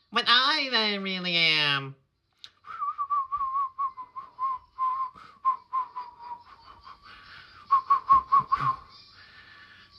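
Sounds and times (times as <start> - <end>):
person whistling warbling notes: 7.6 - 8.9.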